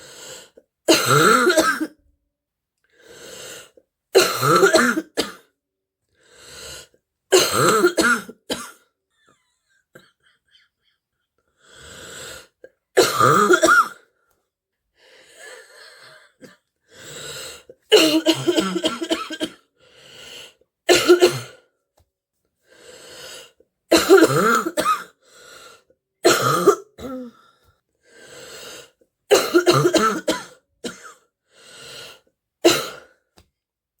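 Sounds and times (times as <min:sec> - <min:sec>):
girl coughing: 0:00.9 - 0:02.0, 0:04.2 - 0:05.5, 0:07.3 - 0:08.8, 0:13.0 - 0:14.0, 0:17.9 - 0:19.6, 0:20.9 - 0:21.6, 0:23.9 - 0:25.2, 0:26.2 - 0:27.4, 0:29.3 - 0:31.2, 0:32.6 - 0:33.1.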